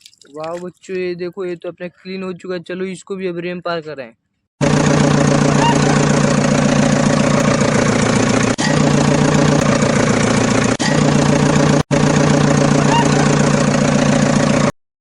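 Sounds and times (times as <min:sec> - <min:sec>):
vehicle engine idling: 0:04.6 - 0:14.7.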